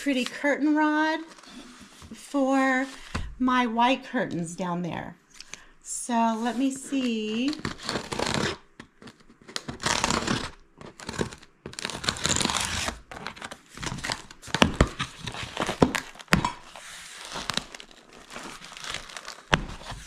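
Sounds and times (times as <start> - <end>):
packaging crinkling and tearing: 7.2 - 20.0.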